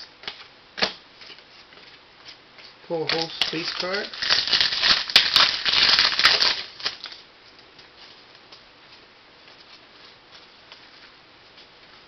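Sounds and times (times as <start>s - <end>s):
trading cards rustling: 3.0s - 7.2s.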